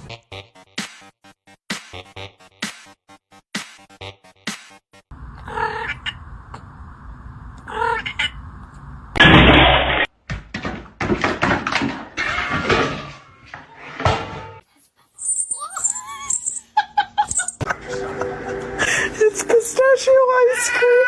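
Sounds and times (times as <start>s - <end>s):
cat meowing: 5.4s - 6.2s, 7.7s - 8.4s
knocks and thuds: 9.2s - 13.0s.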